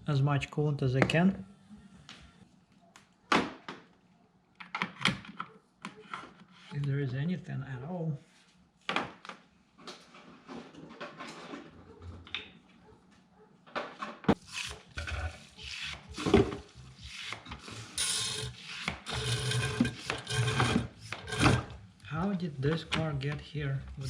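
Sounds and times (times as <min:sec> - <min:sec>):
tools scraping plastic parts: 0:14.3 - 0:21.8.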